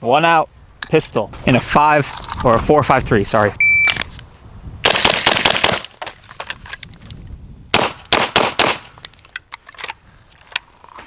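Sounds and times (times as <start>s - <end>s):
rapid gunfire: 4.9s - 5.8s, 7.8s - 8.8s.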